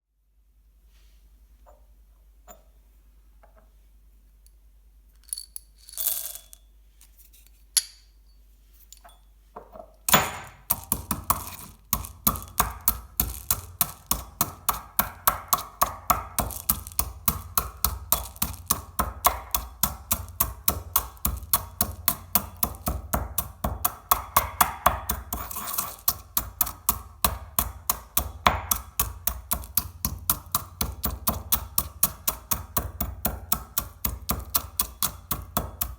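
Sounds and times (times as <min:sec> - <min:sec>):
chocolate balls crunching: 0:10.5 - 0:32.6, 0:33.7 - 0:35.9.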